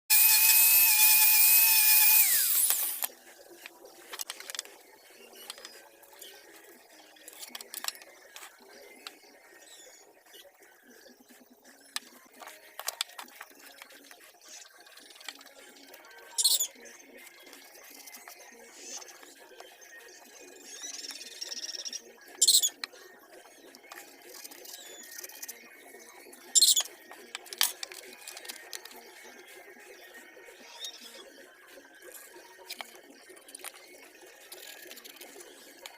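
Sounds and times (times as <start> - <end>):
power tool whining: 0.1 - 3.1.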